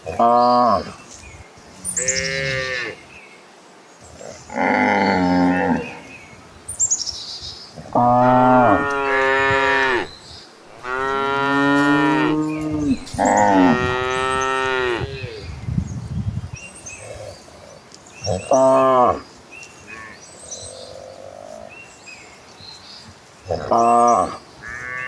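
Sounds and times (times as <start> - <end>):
cattle mooing: 7.8 - 10.1, 10.7 - 15.4.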